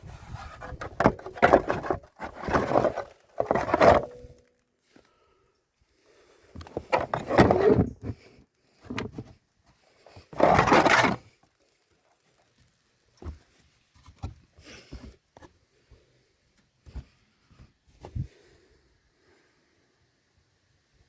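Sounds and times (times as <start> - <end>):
scraping and rubbing: 0.0 - 4.3, 6.7 - 8.1, 10.3 - 11.2.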